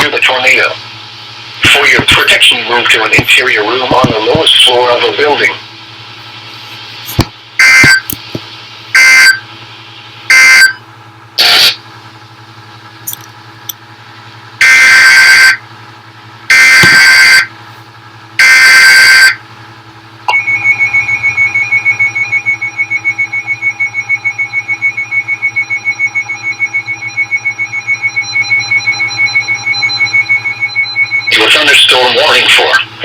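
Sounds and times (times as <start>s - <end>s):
buzzing data bursts: 11.4s - 11.8s.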